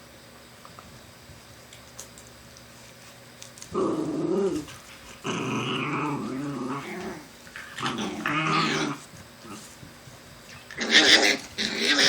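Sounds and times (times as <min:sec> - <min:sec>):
dog growling: 0:03.8 - 0:09.7, 0:10.5 - 0:12.0.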